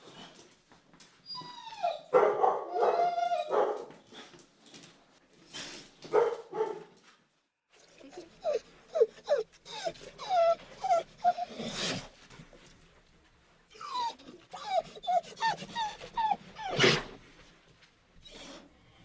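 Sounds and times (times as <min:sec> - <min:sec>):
dog whimpering: 0:01.3 - 0:02.1, 0:02.7 - 0:03.5, 0:07.8 - 0:12.1, 0:13.7 - 0:17.2.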